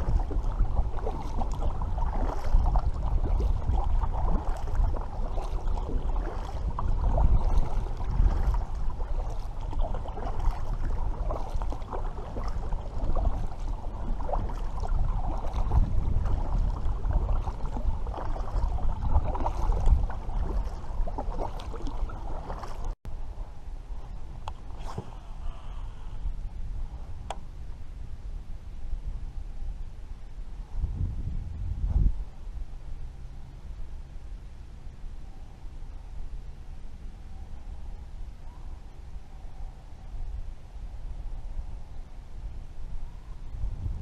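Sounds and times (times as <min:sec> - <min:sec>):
water sloshing and gurgling: 0:00.0 - 0:23.1, 0:23.8 - 0:27.4
wind buffeting microphone: 0:00.0 - 0:35.0, 0:38.1 - 0:44.0.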